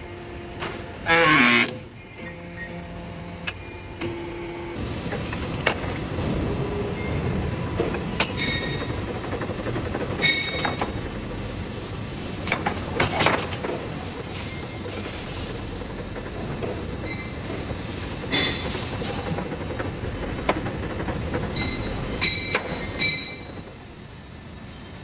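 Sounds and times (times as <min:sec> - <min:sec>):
machinery rumble: 0:04.6 - 0:24.6.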